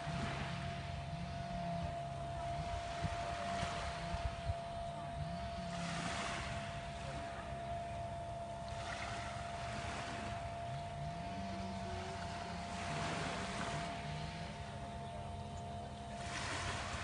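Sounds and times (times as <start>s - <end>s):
small waves washing onto beach: 0.0s - 1.8s, 5.2s - 7.5s, 8.7s - 17.0s
steady low hum: 0.0s - 17.0s.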